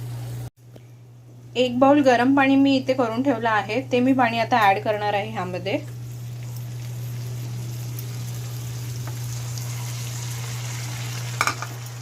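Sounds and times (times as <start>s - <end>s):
water sizzling in hot oil: 5.8s - 12.0s.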